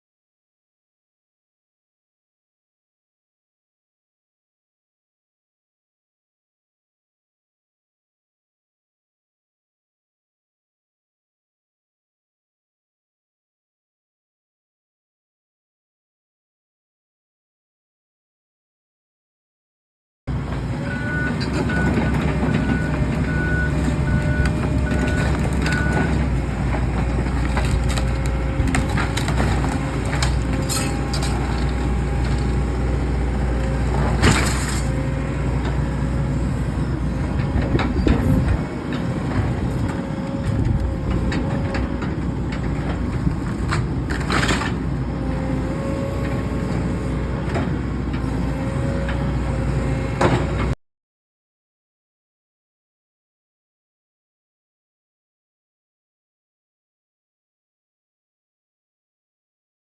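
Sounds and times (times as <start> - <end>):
demolition machine running: 20.3 - 50.7
wood crushing and cracking: 23.7 - 35.0.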